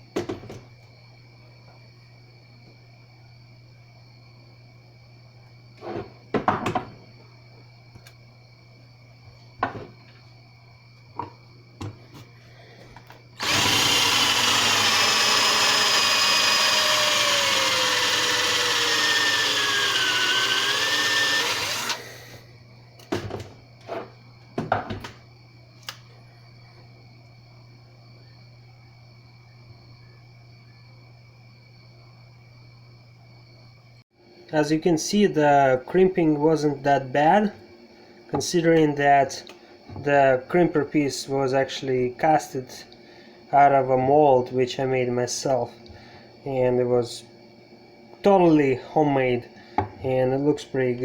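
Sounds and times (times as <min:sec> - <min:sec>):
tool handling knocks and clicks: 0:00.2 - 0:00.6, 0:49.8 - 0:50.0
electric drill whining: 0:13.4 - 0:22.4.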